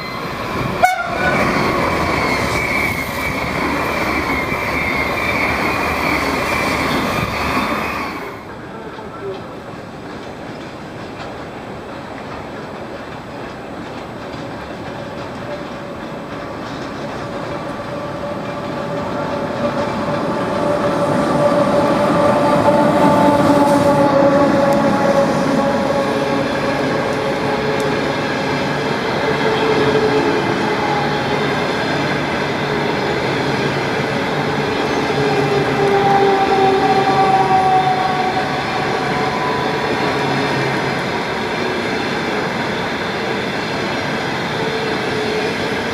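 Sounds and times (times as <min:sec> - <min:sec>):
train wheels rumbling: 0:00.0 - 0:45.9
train whine of steady tones: 0:00.0 - 0:45.9.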